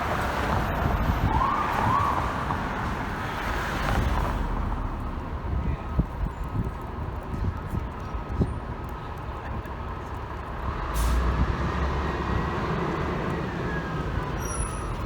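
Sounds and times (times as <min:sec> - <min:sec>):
street traffic: 0:00.0 - 0:15.0
air brake hiss: 0:11.0 - 0:11.3.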